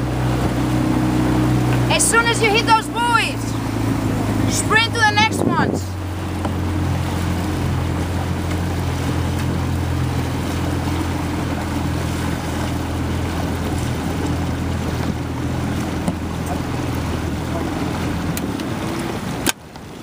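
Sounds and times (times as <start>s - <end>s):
motorboat engine humming: 0.0s - 20.0s
water noise: 0.0s - 20.0s
wind noise: 3.6s - 6.9s.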